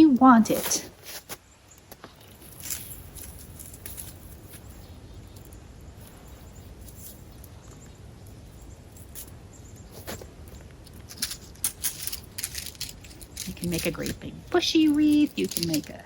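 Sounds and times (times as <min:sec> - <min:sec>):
rustling of evergreen sprigs: 0:00.4 - 0:07.8, 0:08.5 - 0:16.0.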